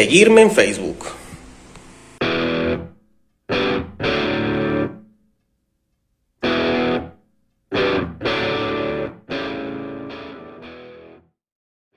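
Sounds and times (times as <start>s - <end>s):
distorted electric guitar chords: 1.9s - 5.0s, 6.4s - 11.3s.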